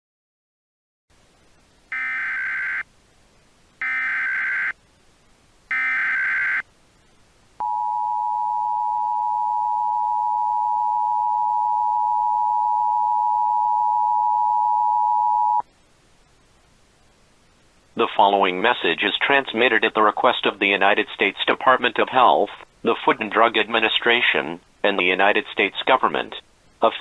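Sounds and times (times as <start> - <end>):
data bursts: 3.8 - 4.8, 5.7 - 6.6.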